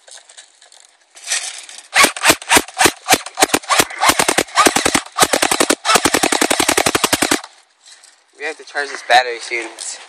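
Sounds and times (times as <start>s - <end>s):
airsoft gun firing: 1.9s - 7.5s.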